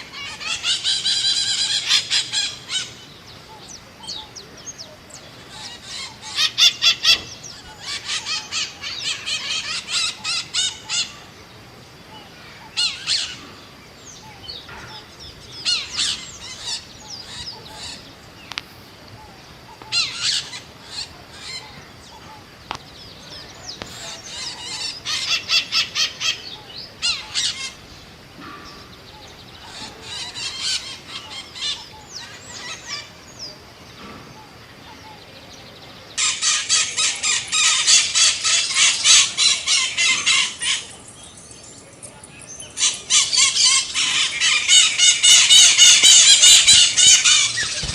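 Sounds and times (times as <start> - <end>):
parrots calling rapidly: 0.0 - 3.1, 5.4 - 11.3, 12.6 - 13.4, 15.6 - 18.1, 19.7 - 22.5, 23.8 - 27.9, 29.5 - 33.2, 36.2 - 41.2, 42.7 - 47.9.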